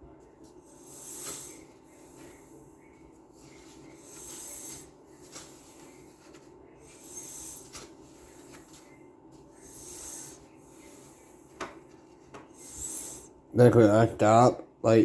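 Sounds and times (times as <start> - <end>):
paper rustling: 5.1 - 7.0, 7.6 - 9.5.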